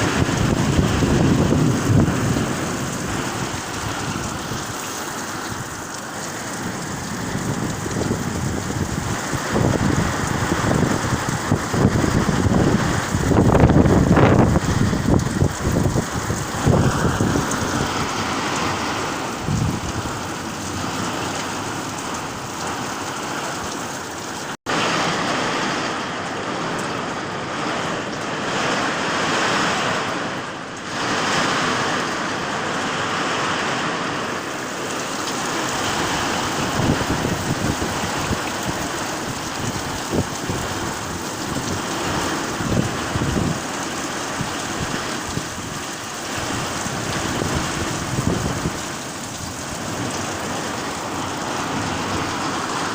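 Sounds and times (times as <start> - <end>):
wind rushing: 0.0 - 4.9, 6.7 - 21.5
wind buffeting microphone: 0.0 - 24.2, 25.2 - 52.9
heavy rain: 0.0 - 52.9.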